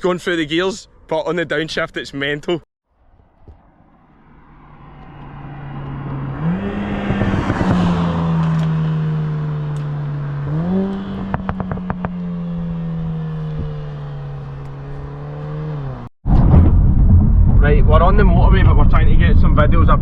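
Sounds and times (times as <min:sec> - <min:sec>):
car engine revving: 0:04.0 - 0:16.1
exhaust crackles and pops: 0:09.7 - 0:12.3.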